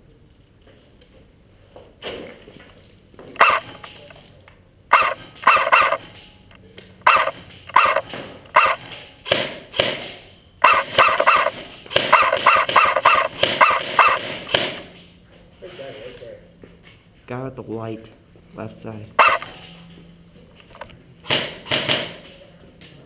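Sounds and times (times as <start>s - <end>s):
dog barking: 3.4s - 3.6s, 4.9s - 6.0s, 7.1s - 8.0s, 8.6s - 8.8s, 12.1s - 14.2s, 19.2s - 19.4s.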